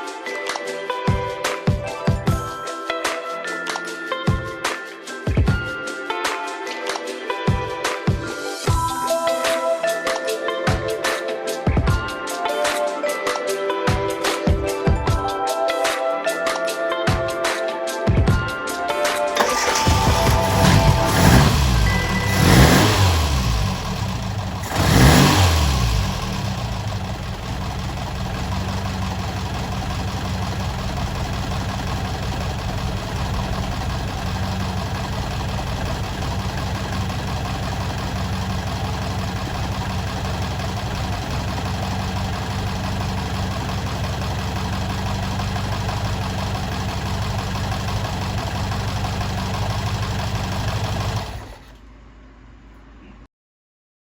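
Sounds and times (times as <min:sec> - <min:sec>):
car engine revving and idling: 0:19.4 - 0:52.5.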